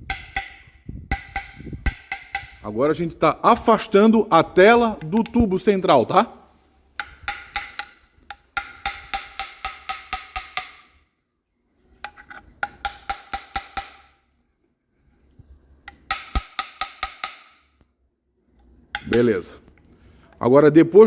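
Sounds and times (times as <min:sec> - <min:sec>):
light metal taps on tube: 0:07.0 - 0:10.9, 0:19.0 - 0:19.3.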